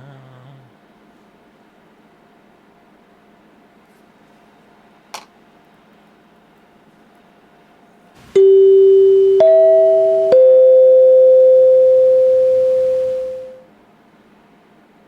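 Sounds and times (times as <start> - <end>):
three-note chime: 8.4 - 13.6.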